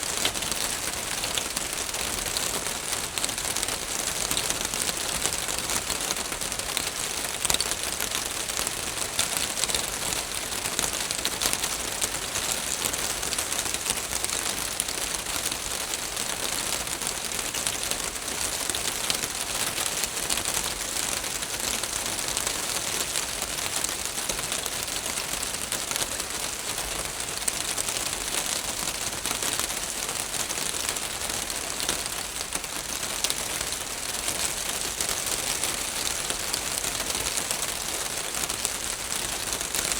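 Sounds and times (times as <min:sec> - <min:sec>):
rain on a roof: 0:00.0 - 0:39.9.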